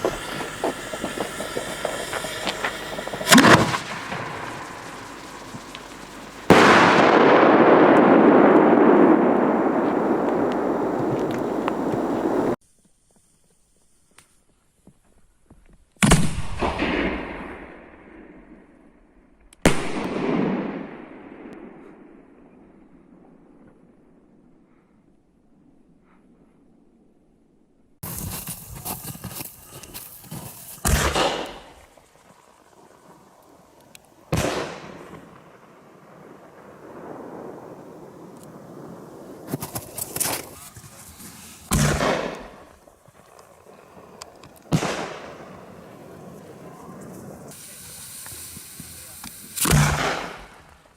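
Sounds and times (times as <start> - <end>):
loud bangs with echo: 0.0 - 11.2
firework bang: 0.0 - 12.6, 28.0 - 32.0, 34.3 - 50.9
rolling echo: 0.0 - 12.6, 34.3 - 50.9.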